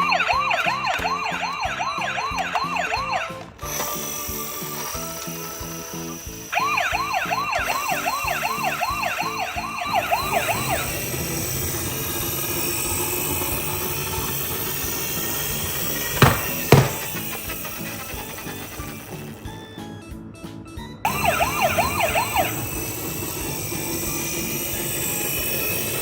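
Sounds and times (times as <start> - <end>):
emergency siren sweeping: 0.0 - 3.5, 6.5 - 14.0, 21.1 - 25.4.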